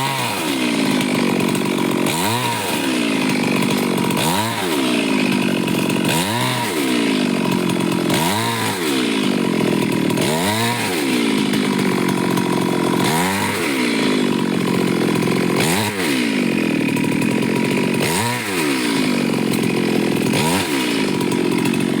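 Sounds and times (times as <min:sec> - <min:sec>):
chainsaw cutting wood: 0:00.0 - 0:22.0.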